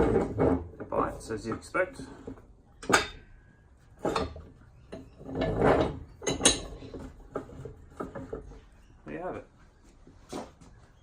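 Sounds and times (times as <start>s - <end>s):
vise jaw sliding metallic scrape: 3.8s - 8.6s.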